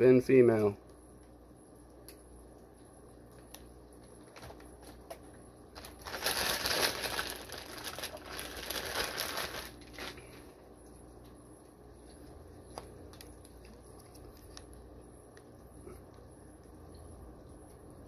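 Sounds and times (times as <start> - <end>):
plastic bags crinkling: 5.7 - 10.5.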